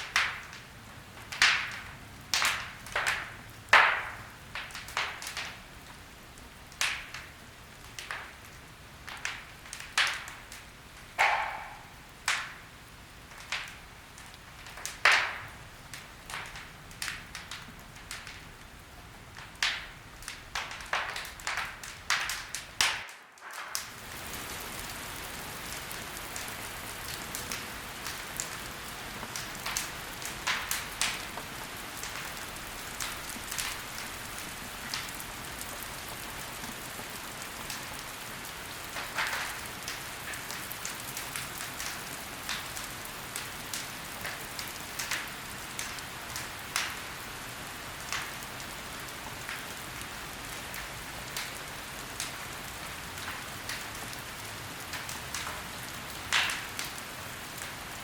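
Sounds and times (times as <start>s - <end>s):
fire crackling and hissing: 0.0s - 58.0s
wood popping and snapping: 11.2s - 12.6s.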